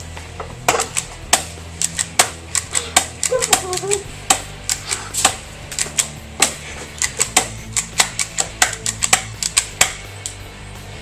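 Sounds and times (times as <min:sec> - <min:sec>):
low hum: 0:00.0 - 0:11.0.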